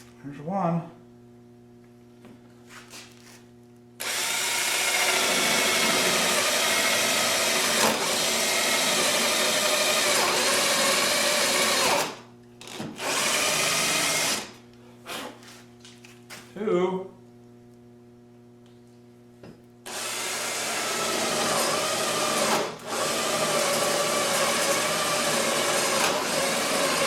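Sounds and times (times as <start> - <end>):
cordless drill boring into wood: 4.0 - 14.5, 19.9 - 27.0.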